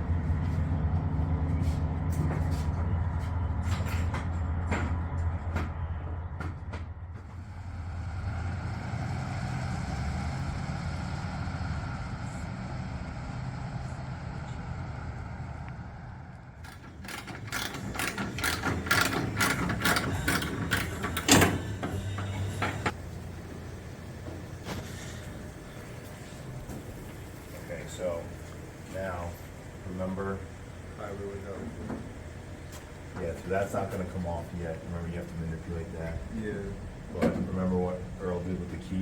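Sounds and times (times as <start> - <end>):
vehicle engine humming: 0.0 - 39.0
metallic clicks and knocks: 16.6 - 23.0.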